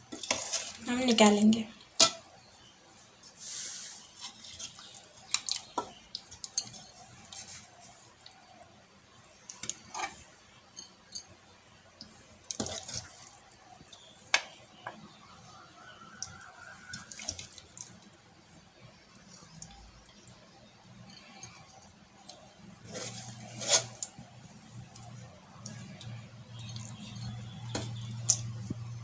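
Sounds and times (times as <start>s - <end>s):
spoon scraping cooking pot: 0.0s - 0.9s, 9.6s - 11.2s, 22.8s - 28.9s.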